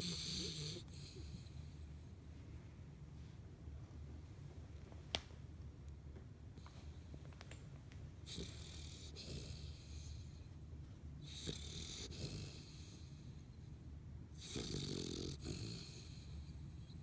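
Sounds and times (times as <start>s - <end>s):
dog snoring: 0.0s - 2.0s, 8.2s - 10.5s, 11.2s - 13.4s, 14.4s - 17.0s.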